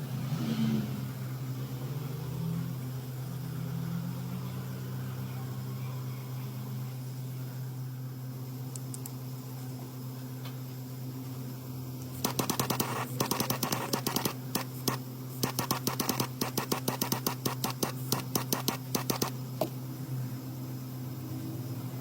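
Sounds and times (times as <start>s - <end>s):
steady low hum: 5.6s - 22.0s
rapid sharp clicks: 12.1s - 19.4s.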